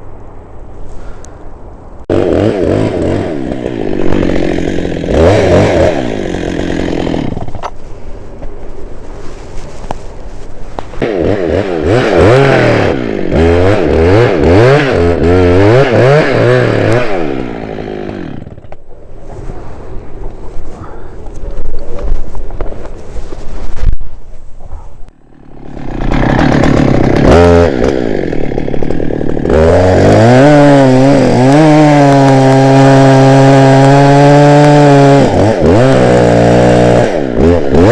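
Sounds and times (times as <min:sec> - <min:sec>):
chainsaw engine revving: 0:02.1 - 0:07.7, 0:11.0 - 0:18.8, 0:25.1 - 0:37.9.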